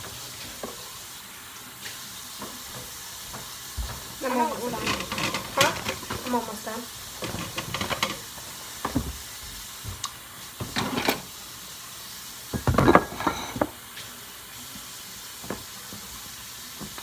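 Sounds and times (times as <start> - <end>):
tap water running into sink: 0.0 - 17.0
bowls and utensils clattering: 2.4 - 11.4, 12.5 - 14.0.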